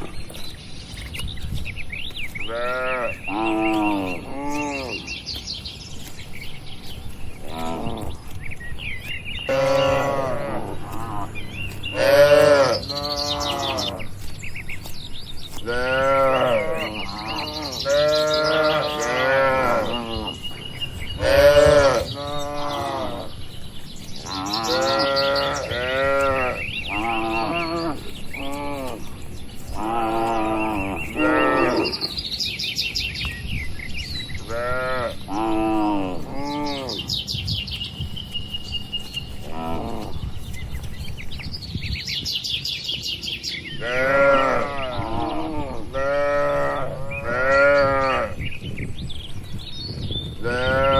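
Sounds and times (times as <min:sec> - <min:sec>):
cattle mooing: 0:07.4 - 0:08.2, 0:09.5 - 0:14.2, 0:15.6 - 0:20.5, 0:21.2 - 0:23.4, 0:24.2 - 0:29.1, 0:29.7 - 0:32.1, 0:39.4 - 0:40.2, 0:43.8 - 0:48.4, 0:50.4 - 0:50.9.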